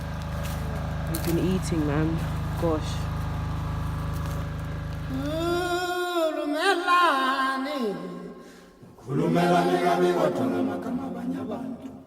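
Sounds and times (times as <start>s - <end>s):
steady low hum: 0.0s - 6.1s
person singing long phrase: 5.1s - 8.2s.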